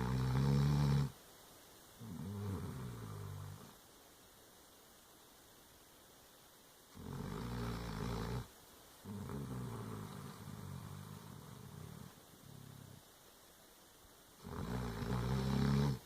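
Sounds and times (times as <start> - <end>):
dog snoring: 0.0 - 1.2, 2.0 - 3.8, 6.9 - 13.0, 14.4 - 16.0.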